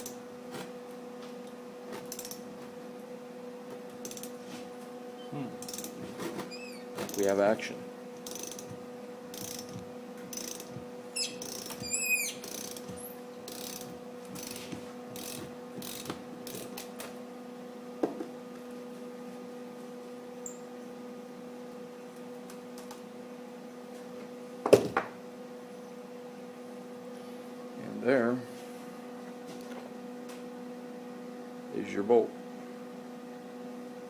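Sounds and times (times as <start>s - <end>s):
seized bolt squeaking: 6.4s - 7.3s, 9.4s - 13.8s
ratchet wrench ratcheting: 8.2s - 8.7s, 9.3s - 10.7s, 11.4s - 11.8s, 12.4s - 12.8s, 13.5s - 14.6s, 15.2s - 16.7s.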